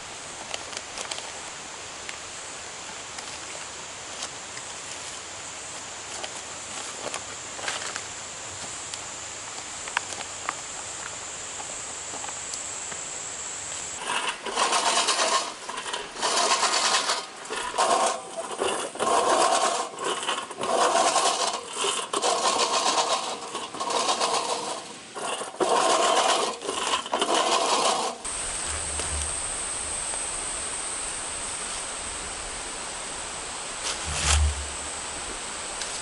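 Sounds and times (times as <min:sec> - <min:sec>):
lawn mower cutting grass: 0:13.7 - 0:36.0
high-pitched insect drone: 0:28.3 - 0:36.0.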